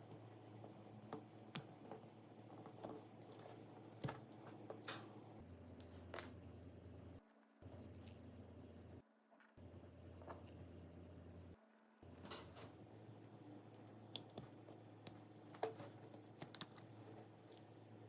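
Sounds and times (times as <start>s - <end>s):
small tools clicking and tapping: 14.1s - 17.7s.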